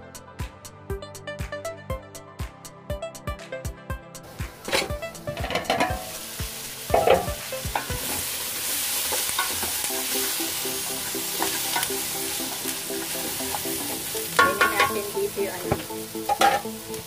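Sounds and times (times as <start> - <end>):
food sizzling in a pan: 4.3 - 17.0
utensil clattering against pan: 4.6 - 6.2, 6.9 - 8.2, 9.1 - 9.8, 13.5 - 15.1, 16.3 - 16.7.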